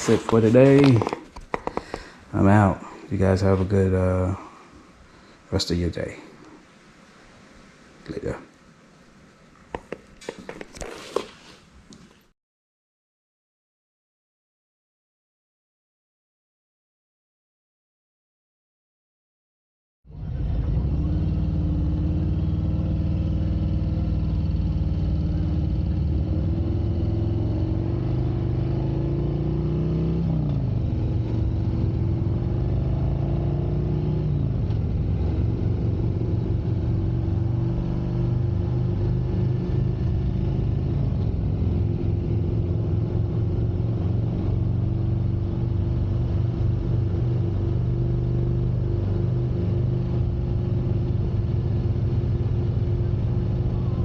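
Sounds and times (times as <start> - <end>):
motorcycle engine accelerating: 0.0 - 2.7, 20.1 - 54.0.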